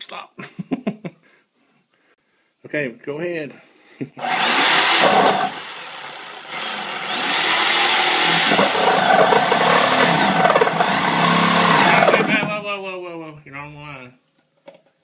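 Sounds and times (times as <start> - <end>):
reciprocating saw cutting drywall: 4.2 - 12.6.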